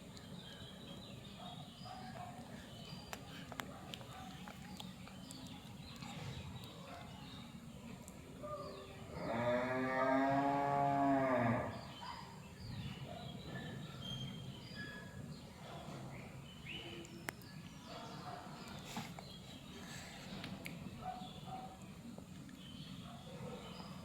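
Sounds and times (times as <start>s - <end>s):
cow mooing: 9.2s - 11.8s.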